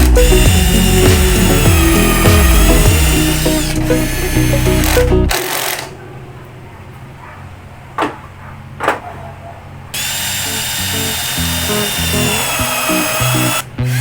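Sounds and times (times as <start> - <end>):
background music: 0.0 - 5.4
power drill whining: 0.0 - 5.9, 10.0 - 14.0.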